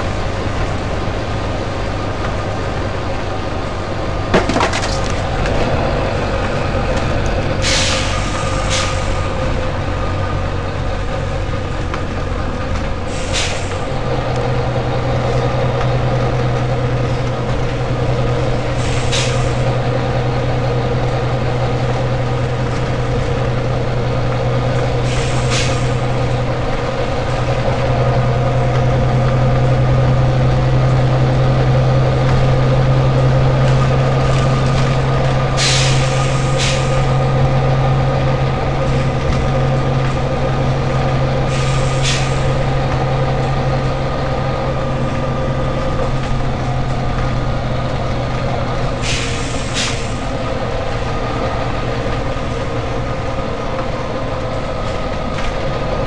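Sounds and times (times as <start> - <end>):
bus diesel engine running: 0.0 - 56.0
short air hisses: 7.6 - 9.3, 13.1 - 13.9, 18.8 - 19.6, 25.0 - 26.0, 35.6 - 37.0, 41.5 - 42.5, 49.0 - 50.3.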